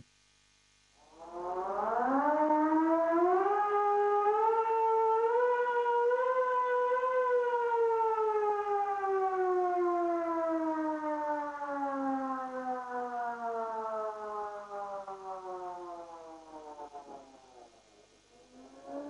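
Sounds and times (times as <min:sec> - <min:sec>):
warning siren wailing: 0:01.0 - 0:19.0.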